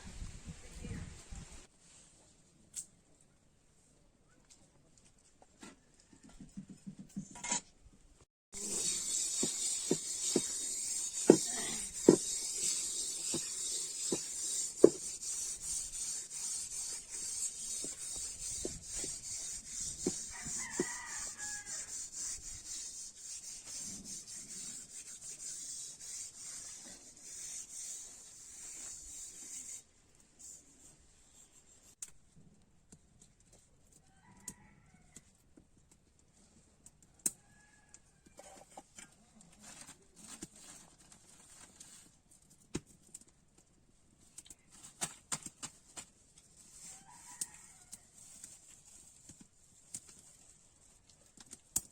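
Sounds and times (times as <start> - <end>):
rhythmic scraping strokes: 8.6 - 29.6.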